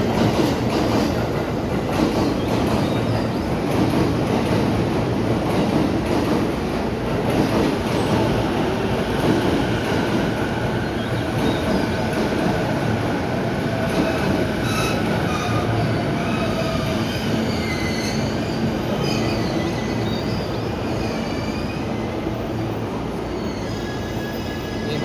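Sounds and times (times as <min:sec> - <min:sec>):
train rumbling on rails: 0:00.0 - 0:25.0
high wavering wheel squeal: 0:23.3 - 0:25.0.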